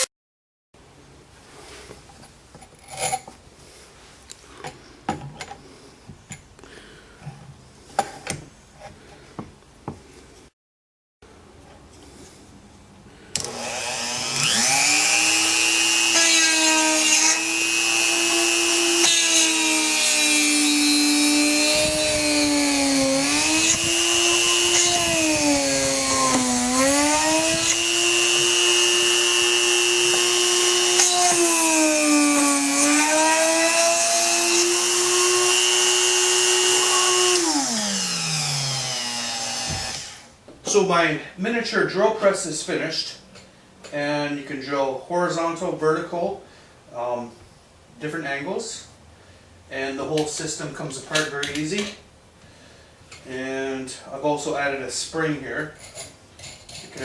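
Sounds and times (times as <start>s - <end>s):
rotary tool whining: 13.4s - 40.3s.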